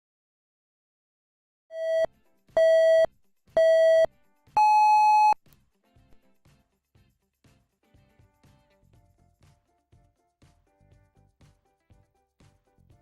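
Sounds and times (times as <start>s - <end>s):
countdown beeps: 1.8s - 5.4s.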